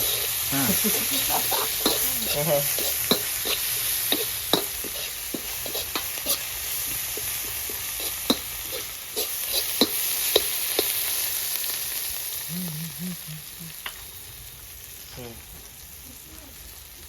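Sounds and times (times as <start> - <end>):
utensil scraping a pan: 0.0 - 11.0
food sizzling in a pan: 0.0 - 17.0.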